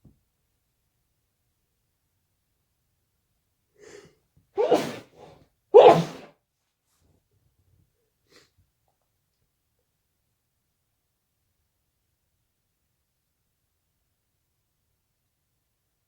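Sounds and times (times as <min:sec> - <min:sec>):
quick in-breath: 0:03.8 - 0:06.2
person sneezing: 0:03.8 - 0:06.3.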